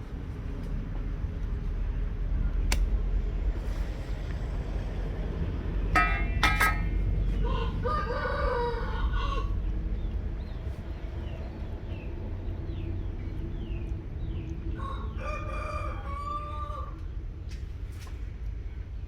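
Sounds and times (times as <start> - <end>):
steady low rumble: 0.0 - 15.2
rooster crowing: 7.3 - 9.6, 14.8 - 17.0.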